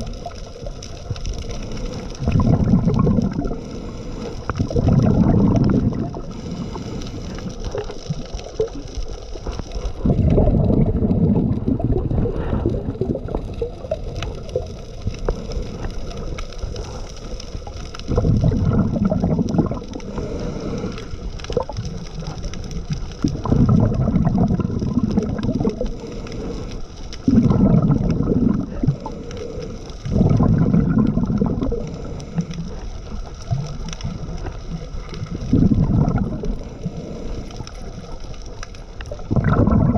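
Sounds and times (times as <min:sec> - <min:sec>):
gurgling air bubbles: 0:00.0 - 0:39.9
diver breathing through regulator: 0:01.5 - 0:07.9, 0:18.8 - 0:21.6, 0:25.7 - 0:33.0, 0:35.4 - 0:38.1.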